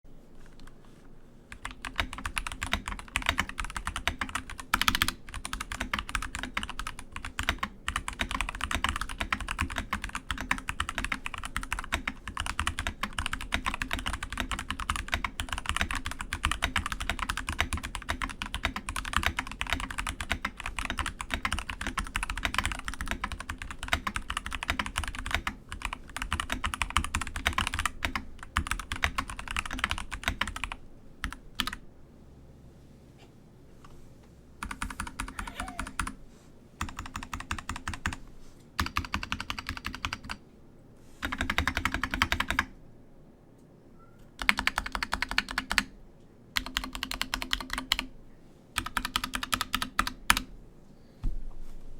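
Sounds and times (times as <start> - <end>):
mechanical keyboard typing: 1.5 - 31.8, 36.8 - 38.2, 38.8 - 40.4, 41.2 - 42.7, 44.4 - 45.9, 46.6 - 48.1, 48.8 - 50.5.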